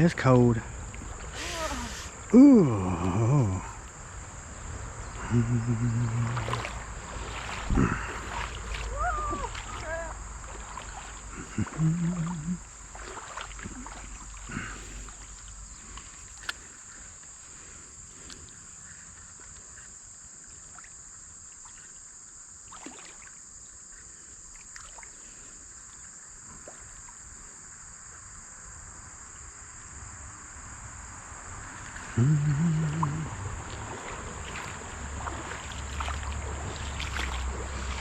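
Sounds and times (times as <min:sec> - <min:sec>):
creekside ambience: 0:00.0 - 0:38.0
insect buzzing: 0:00.8 - 0:14.7, 0:31.6 - 0:38.0
water stirring: 0:05.1 - 0:15.4, 0:31.8 - 0:38.0.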